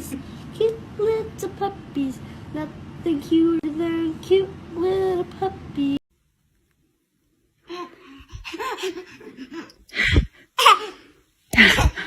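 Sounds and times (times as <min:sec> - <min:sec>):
woman singing: 0:00.0 - 0:06.0
child laughing and gasping: 0:07.7 - 0:12.0.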